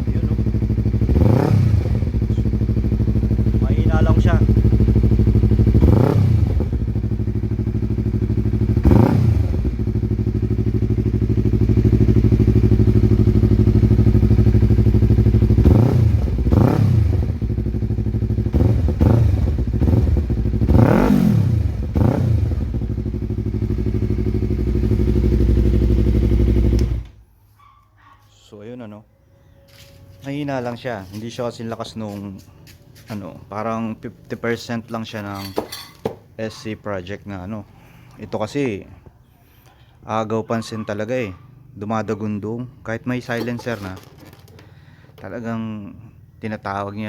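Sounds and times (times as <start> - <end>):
motorcycle engine revving: 0.0 - 27.2.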